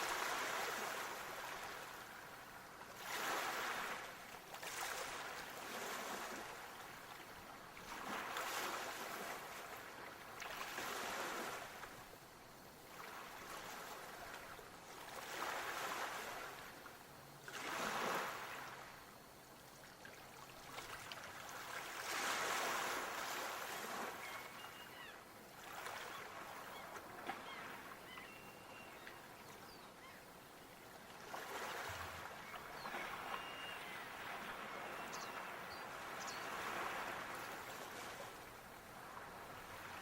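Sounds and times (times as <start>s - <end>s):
sea waves washing in: 0.0s - 6.8s.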